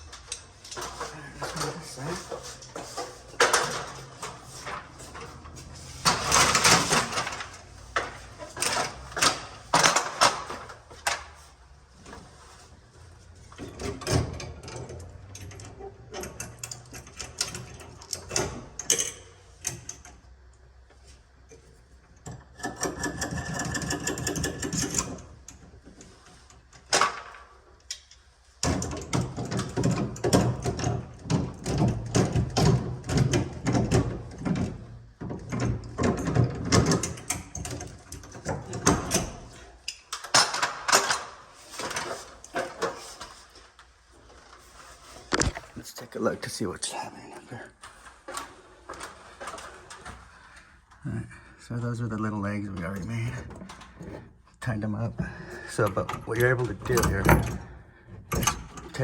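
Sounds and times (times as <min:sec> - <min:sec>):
metal hardware clanking: 0:55.8 - 0:59.0.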